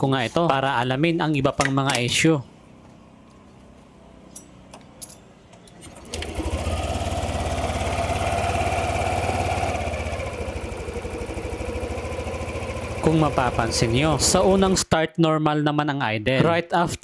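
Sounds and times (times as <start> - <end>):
scooter engine starting and idling: 5.6 - 14.8.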